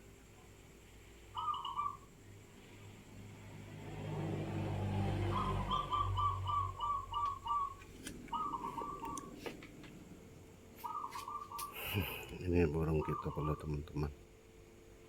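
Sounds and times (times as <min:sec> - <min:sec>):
dove cooing: 0:01.4 - 0:02.1, 0:05.1 - 0:09.8, 0:10.7 - 0:13.8.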